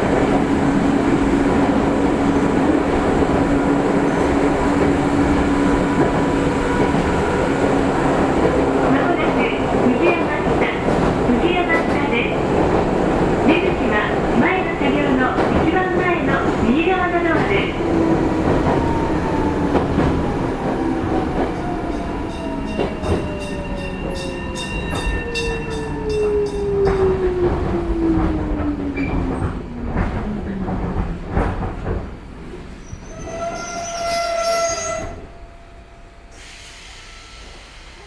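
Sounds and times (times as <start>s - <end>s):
short brake squeal: 32.8s - 35.2s.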